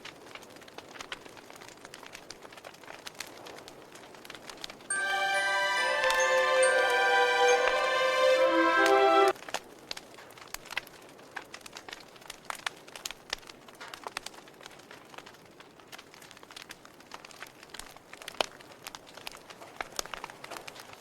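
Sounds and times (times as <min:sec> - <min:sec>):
wood fire crackling: 0:00.1 - 0:04.8, 0:09.9 - 0:21.0.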